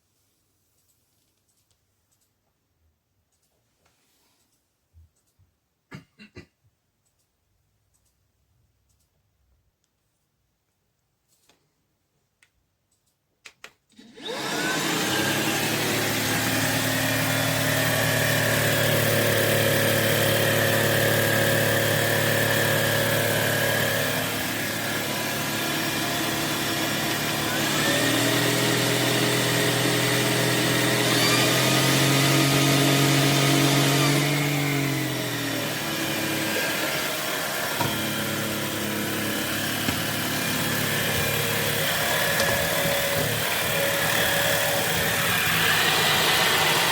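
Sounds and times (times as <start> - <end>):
vacuum cleaner motor whining: 13.9 - 46.9.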